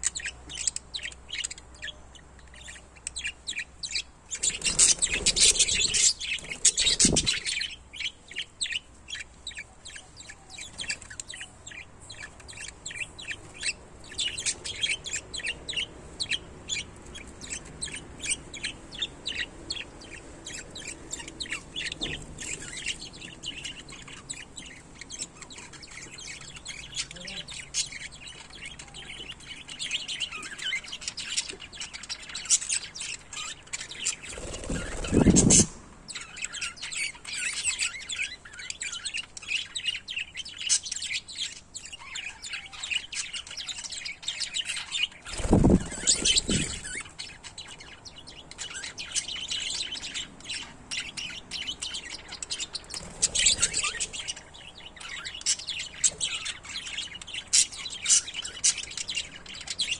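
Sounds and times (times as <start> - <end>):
small parrots chattering: 0.0 - 59.9.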